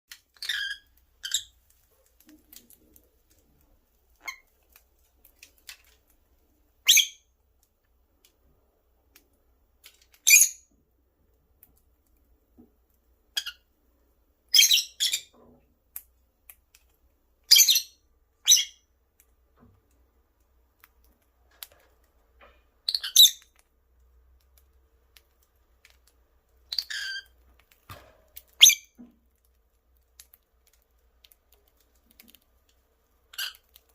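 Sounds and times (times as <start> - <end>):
lovebirds chirping: 0.3 - 1.6, 14.5 - 15.3, 17.5 - 18.9, 22.8 - 23.5, 26.6 - 27.4, 28.5 - 29.0.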